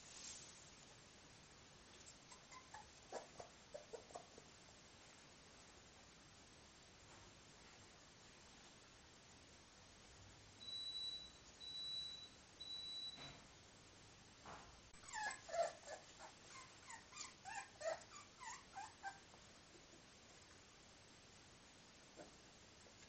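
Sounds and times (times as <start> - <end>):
puppies whimpering and squeaking: 2.1 - 4.3, 15.0 - 19.2
high beeps: 10.6 - 13.3.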